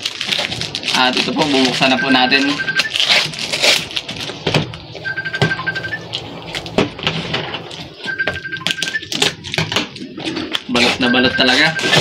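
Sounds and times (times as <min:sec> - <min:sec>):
package being unwrapped: 0:00.0 - 0:04.8.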